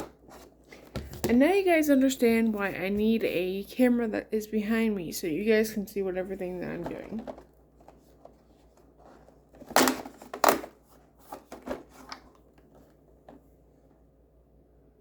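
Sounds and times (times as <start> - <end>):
packaging clicks and crinkles: 9.1 - 12.8.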